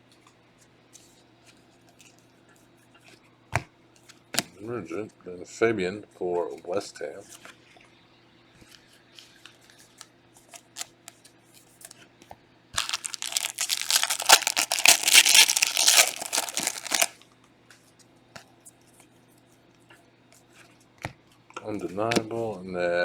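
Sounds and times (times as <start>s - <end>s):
card pack wrapper tearing: 12.8s - 17.2s.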